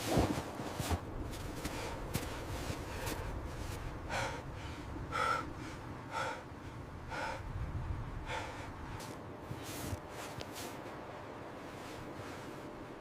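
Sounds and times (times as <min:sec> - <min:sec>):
low wind rumble: 0:00.0 - 0:13.0
heavy gasping breaths: 0:04.0 - 0:07.6, 0:08.2 - 0:09.1.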